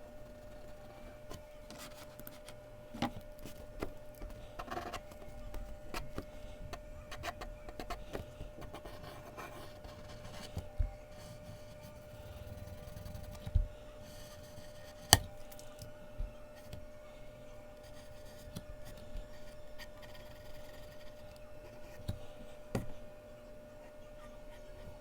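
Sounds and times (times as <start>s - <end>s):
faint steady hum: 0.0s - 25.0s
pencil scratching on paper: 0.2s - 2.6s, 3.4s - 6.4s, 7.0s - 15.2s, 17.8s - 22.2s.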